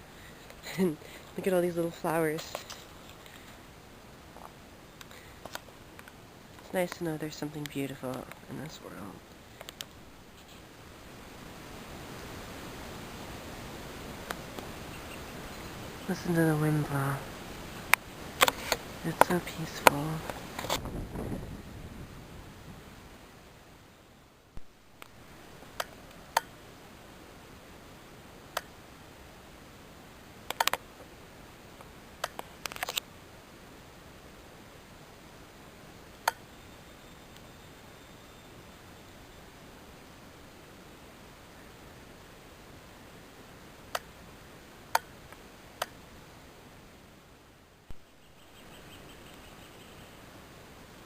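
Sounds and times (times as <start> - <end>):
faint steady hiss: 0.0 - 51.0
sharp clicks: 32.2 - 33.0.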